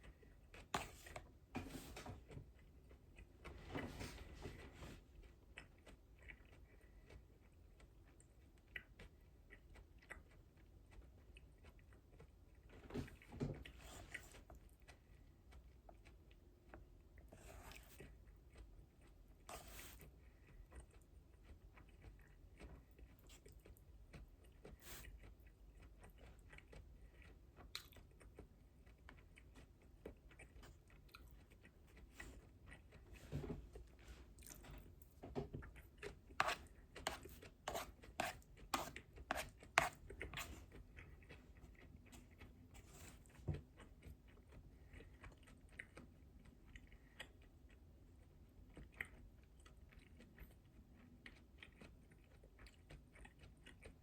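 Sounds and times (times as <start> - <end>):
chewing and crunching food: 0.0 - 54.0.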